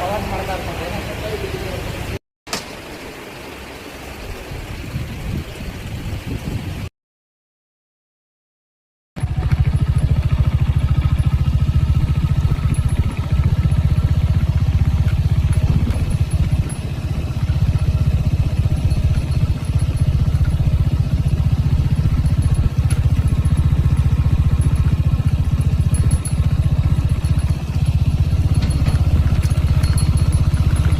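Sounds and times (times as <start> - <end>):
motorcycle engine idling: 9.2 - 30.9.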